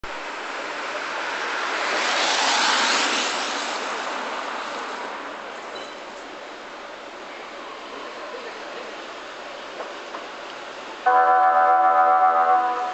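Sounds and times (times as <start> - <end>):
vehicle passing by: 1.5 - 5.1.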